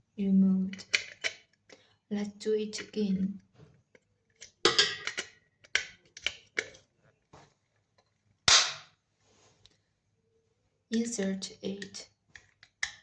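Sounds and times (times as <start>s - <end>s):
loud snap: 8.5s - 8.8s.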